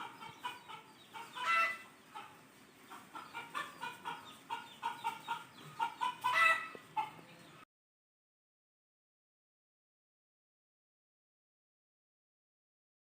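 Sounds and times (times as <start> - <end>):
chickens clucking: 0.0 - 7.6.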